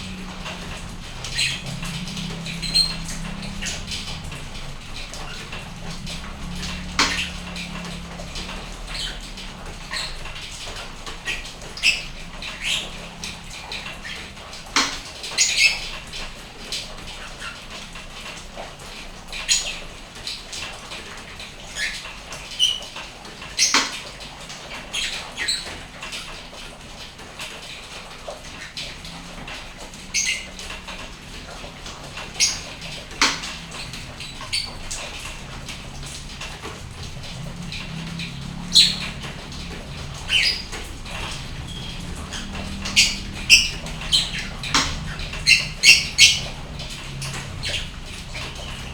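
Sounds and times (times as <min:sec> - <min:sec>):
steady rain hiss: 0:00.0 - 0:48.9.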